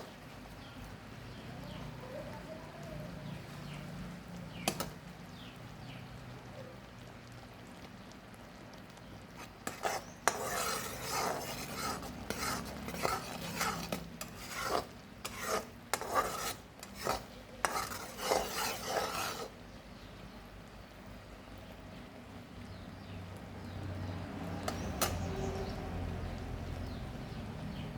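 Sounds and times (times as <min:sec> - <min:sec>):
spoon scraping a pan: 0:04.6 - 0:05.0, 0:08.8 - 0:19.6, 0:24.5 - 0:25.8.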